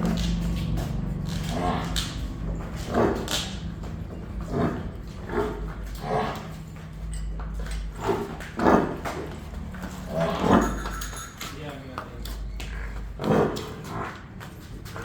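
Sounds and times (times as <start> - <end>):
steady low hum: 0.0 - 10.2.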